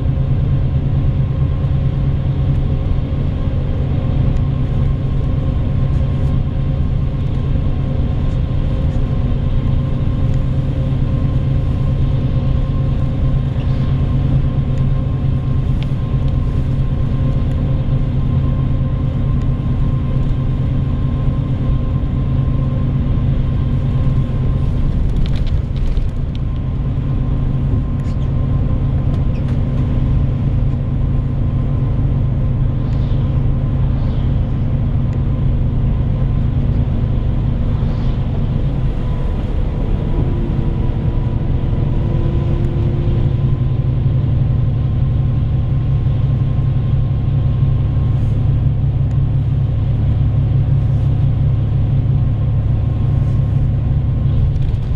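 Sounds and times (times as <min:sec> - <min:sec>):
bus engine and road drone: 0:00.0 - 0:54.9.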